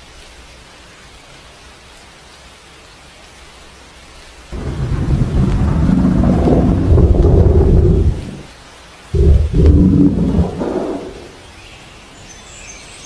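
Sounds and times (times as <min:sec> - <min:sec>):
rain-like hiss: 0:00.0 - 0:13.0
loud deep rumble: 0:04.5 - 0:08.5, 0:09.2 - 0:11.4.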